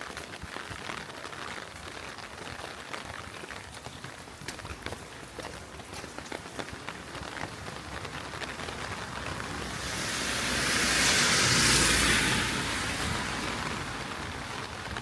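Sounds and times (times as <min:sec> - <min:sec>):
car tyres hissing on wet road: 0:08.0 - 0:15.0.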